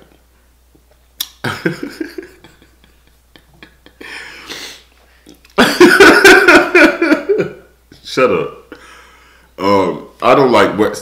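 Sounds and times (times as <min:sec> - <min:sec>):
mouth clicks: 0:01.2 - 0:01.4
person laughing or coughing: 0:01.4 - 0:04.8
breathy hiss: 0:04.0 - 0:05.3, 0:08.7 - 0:09.6.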